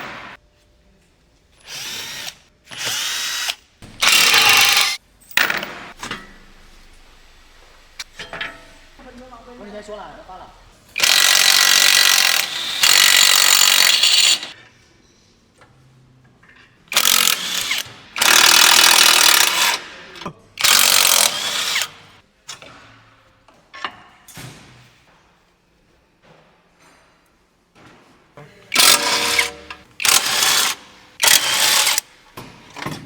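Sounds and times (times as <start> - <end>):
impact wrench bursts: 1.7 - 5.0, 11.0 - 14.6, 16.9 - 19.9, 20.6 - 22.1, 28.7 - 32.1.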